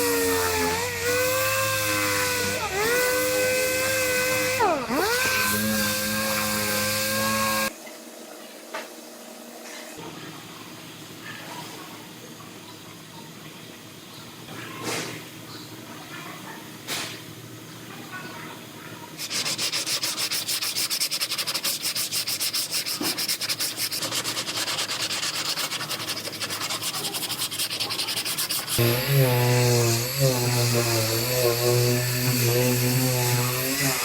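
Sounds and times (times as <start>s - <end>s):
hand sanding scratching strokes: 0.0s - 7.7s, 19.2s - 34.0s
power tool motor whining: 0.0s - 7.7s, 28.8s - 34.0s.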